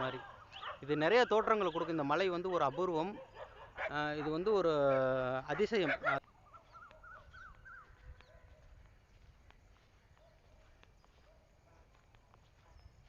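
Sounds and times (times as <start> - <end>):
distant animal calls: 0.0 - 8.7.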